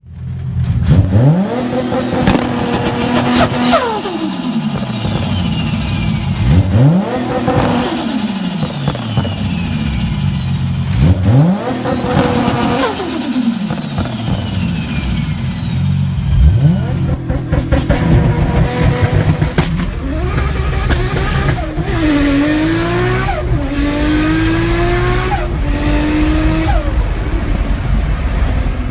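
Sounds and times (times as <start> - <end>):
turbocharged engine revving: 0.2 - 28.9
turbo flutter and whistle: 2.2 - 10.8, 11.9 - 16.9.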